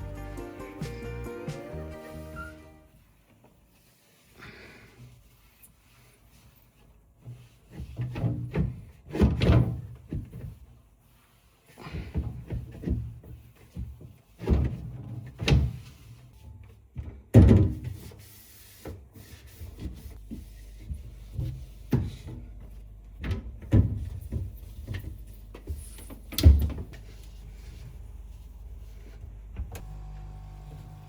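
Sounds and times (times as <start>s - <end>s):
low steady hum: 20.2s - 31.0s.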